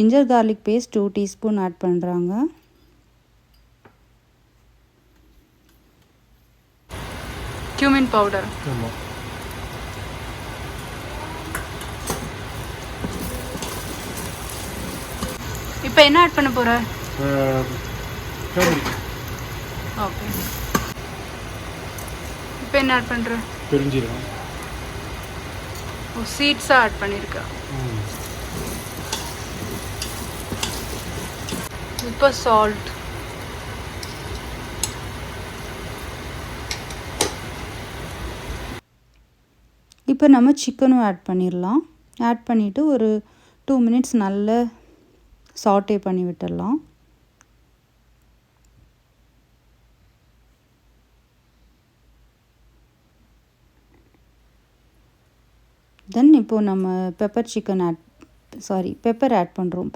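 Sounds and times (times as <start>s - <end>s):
masala sizzling in oil: 6.9s - 38.8s.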